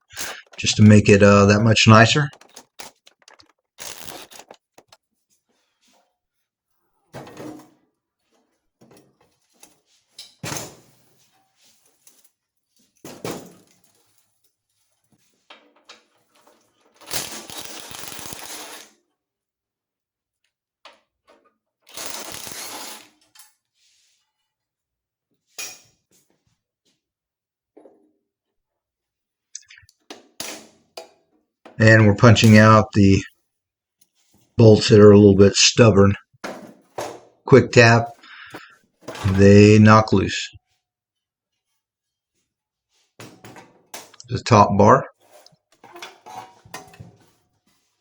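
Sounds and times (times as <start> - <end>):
metal parts and tools clanking: 0.1 - 5.0, 45.2 - 47.2.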